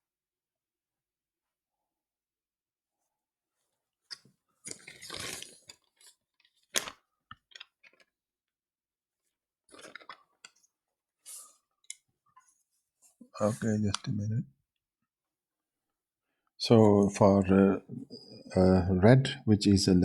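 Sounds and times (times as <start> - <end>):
small clicks and crackles: 4.1 - 8.2.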